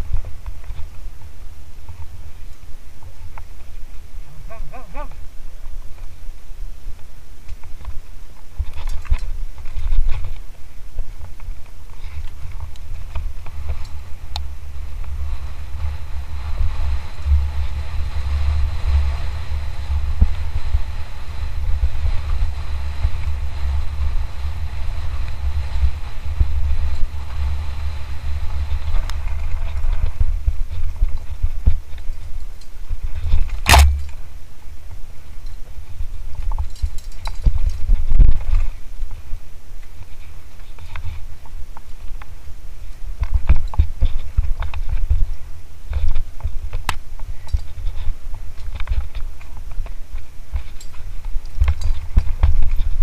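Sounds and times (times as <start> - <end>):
faint high whine: 0.0 - 53.0
wind buffeting microphone: 0.0 - 53.0
sharp knock: 33.7 - 34.2.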